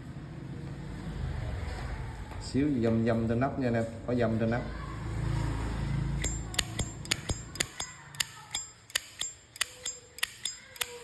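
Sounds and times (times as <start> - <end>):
lighter lid clicking open and shut: 6.2 - 11.0.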